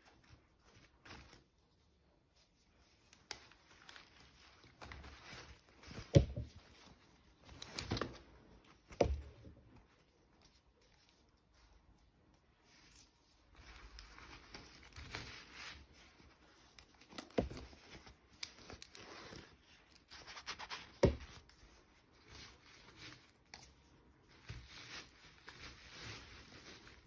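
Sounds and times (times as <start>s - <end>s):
packaging wrapping rustling and tearing: 12.7s - 27.0s.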